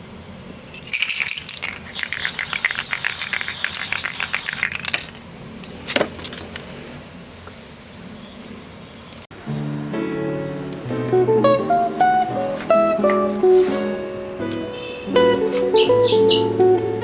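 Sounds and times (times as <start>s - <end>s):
small hard objects clinking: 0.7s - 5.3s.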